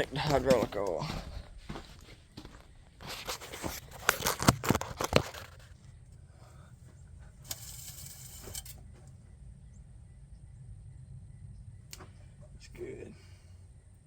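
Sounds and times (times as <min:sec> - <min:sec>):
short rustling hiss: 0:07.4 - 0:08.8.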